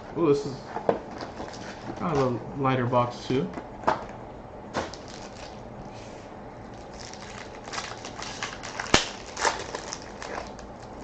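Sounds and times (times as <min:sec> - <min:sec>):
wrapper crinkling: 0:04.8 - 0:05.6, 0:06.7 - 0:11.0.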